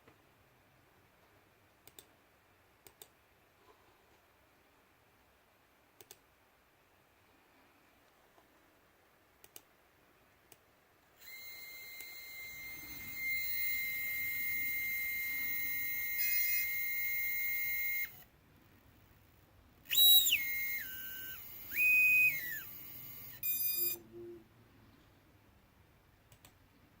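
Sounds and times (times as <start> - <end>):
faint low hum: 0.0 - 27.0
motor controller beeping tones: 11.2 - 18.2, 19.9 - 24.4.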